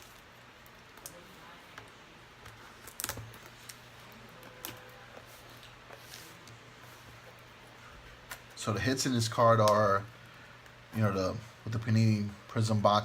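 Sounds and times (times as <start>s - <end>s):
light clicks and crinkles: 0.0s - 7.5s
low steady hum: 0.0s - 13.0s.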